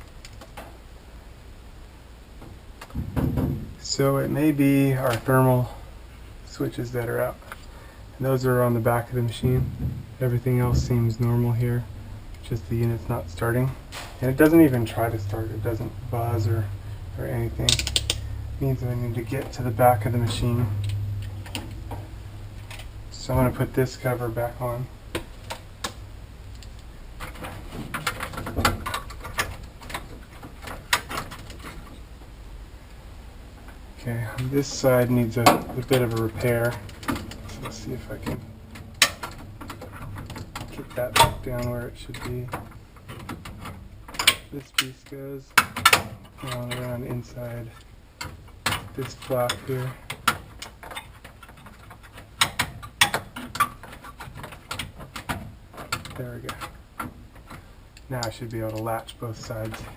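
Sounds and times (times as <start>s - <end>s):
heavy thump: 2.9s - 3.8s, 9.3s - 12.0s
plastic parts clicking into place: 17.6s - 18.3s.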